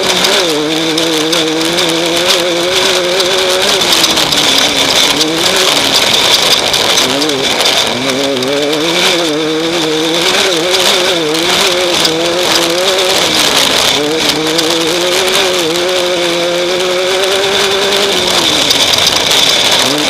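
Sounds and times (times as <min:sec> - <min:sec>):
engine revving hard: 0:00.0 - 0:20.0.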